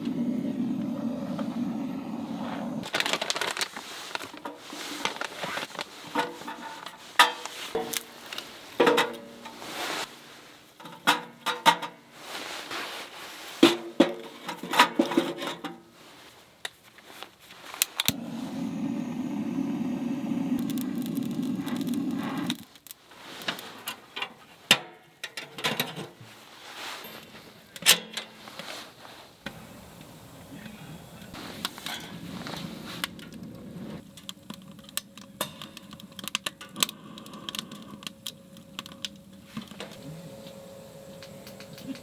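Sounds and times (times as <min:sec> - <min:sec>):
metal cookware clinking: 0:06.2 - 0:08.2.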